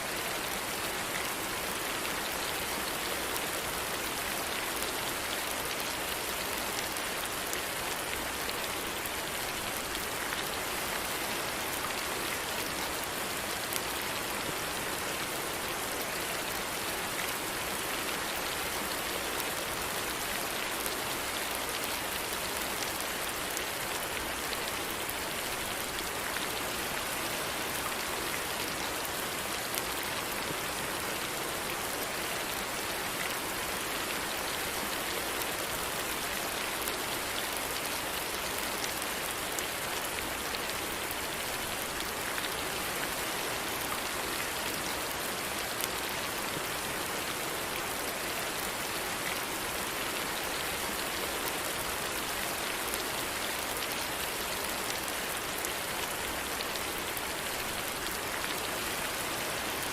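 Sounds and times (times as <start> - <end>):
steady rain pattering: 0.0 - 59.9.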